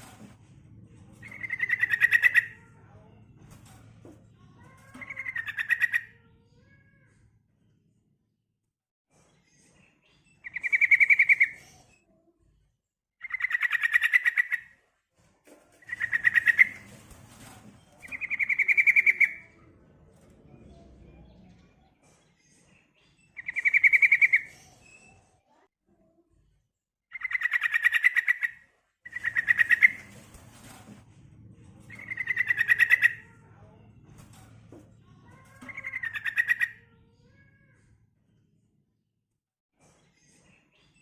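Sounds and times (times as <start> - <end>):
bird chattering trills: 1.3 - 2.6, 5.0 - 6.1, 27.2 - 30.1, 32.0 - 33.3, 35.7 - 36.8.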